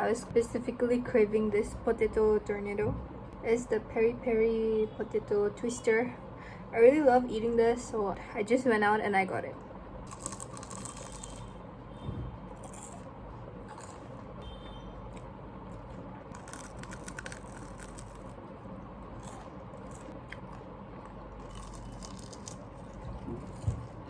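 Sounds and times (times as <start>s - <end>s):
low background hum: 0.0s - 24.0s
crunching and chewing food: 10.0s - 11.6s, 12.5s - 24.0s.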